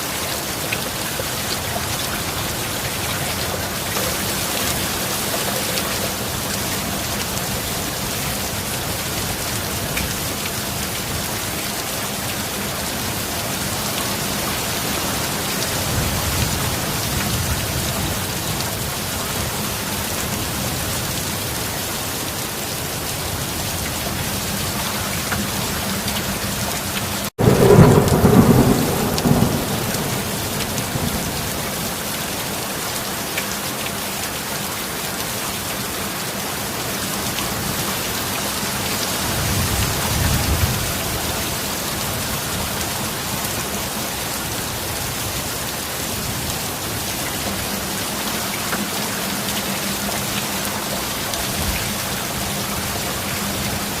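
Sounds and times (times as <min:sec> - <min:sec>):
steady rain: 0:00.0 - 0:54.0
thunder clap and rumble: 0:27.2 - 0:32.1, 0:39.2 - 0:42.8.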